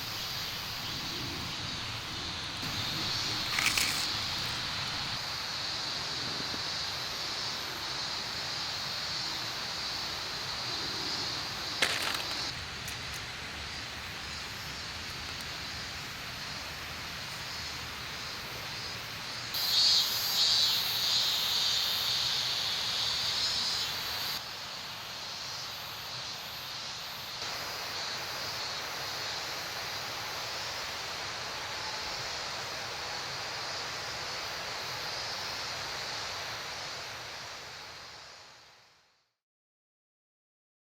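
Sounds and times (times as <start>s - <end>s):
insects shrilling: 0.0s - 24.4s.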